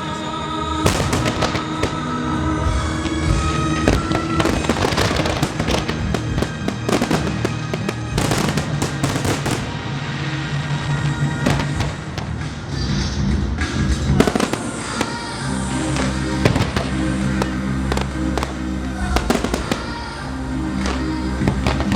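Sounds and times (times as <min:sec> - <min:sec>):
song playing: 0:00.0 - 0:21.9
fireworks bangs and crackles: 0:00.8 - 0:21.9.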